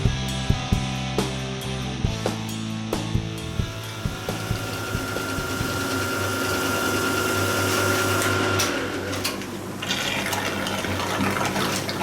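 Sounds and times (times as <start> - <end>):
milling machine hum: 3.3 - 12.0
high whine of metal cutting: 3.7 - 9.2
coolant flowing: 3.8 - 12.0.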